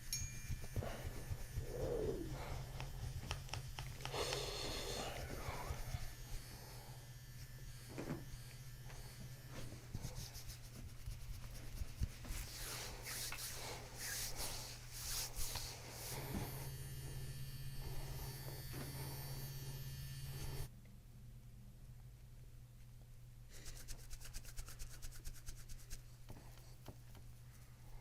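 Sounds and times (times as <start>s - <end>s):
steady low hum: 0.0s - 23.7s
soft rubbing and brushing: 9.0s - 16.6s, 23.6s - 28.0s.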